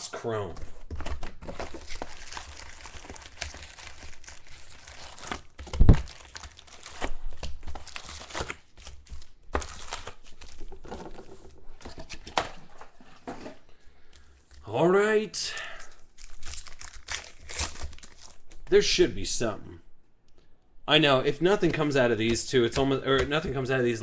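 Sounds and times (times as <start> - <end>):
plastic wrapping crinkling and tearing: 1.0 - 10.9, 15.9 - 18.6.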